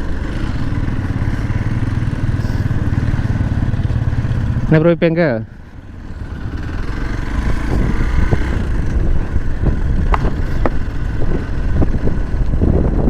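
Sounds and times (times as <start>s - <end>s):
motorcycle engine running: 0.0s - 13.0s
wind buffeting microphone: 6.2s - 13.0s.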